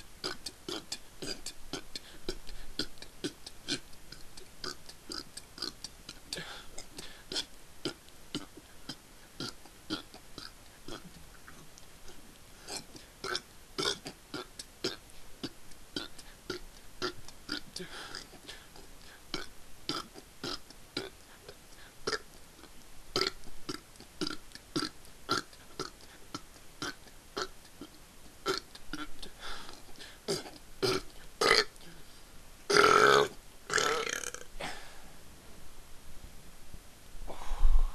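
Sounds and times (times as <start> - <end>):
man burping: 19.3 - 21.1, 30.3 - 31.8, 32.7 - 34.9.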